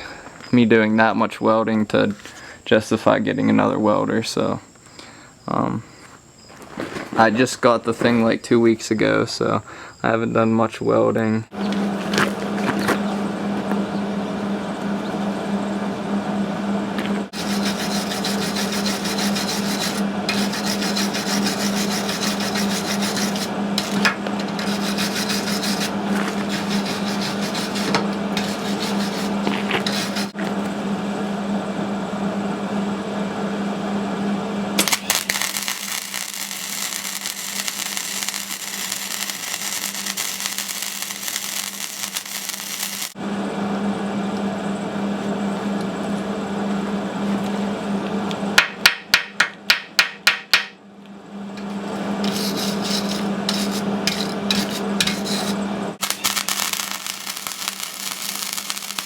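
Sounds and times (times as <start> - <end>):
welder arc crackling: 17.3 - 30.4, 34.8 - 43.2, 52.2 - 59.0.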